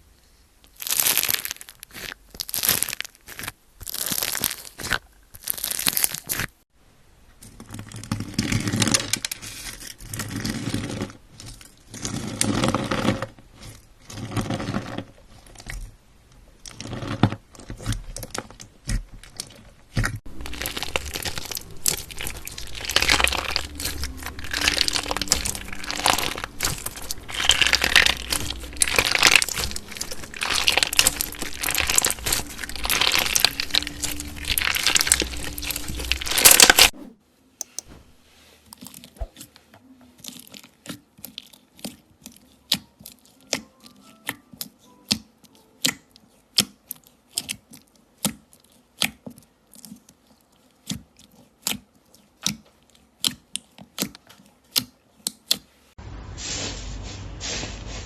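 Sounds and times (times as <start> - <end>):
slime crackling when squeezed: 0.8 - 6.5, 20.3 - 37.0.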